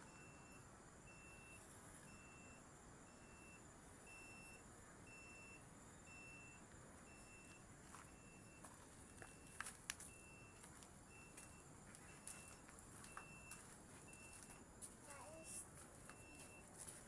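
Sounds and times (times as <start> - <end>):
high-pitched beep: 0.0 - 8.6, 11.2 - 13.6, 15.4 - 16.7.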